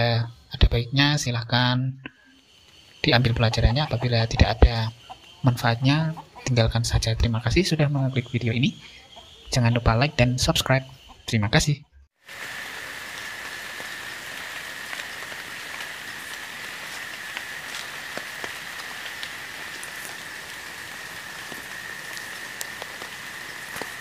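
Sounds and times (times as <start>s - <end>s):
rain hiss: 0.0s - 10.8s, 12.2s - 24.0s
sharp drip ticks: 13.8s - 24.0s.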